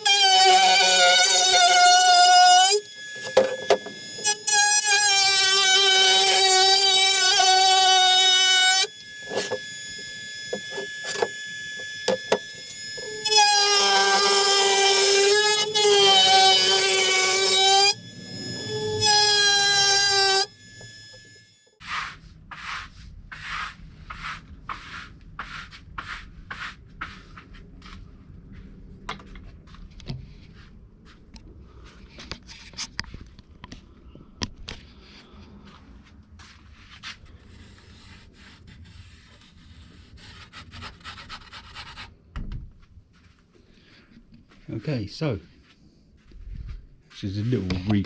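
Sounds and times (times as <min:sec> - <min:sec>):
sandpaper rubbing on wood: 0:21.8 - 0:28.0, 0:36.4 - 0:42.1.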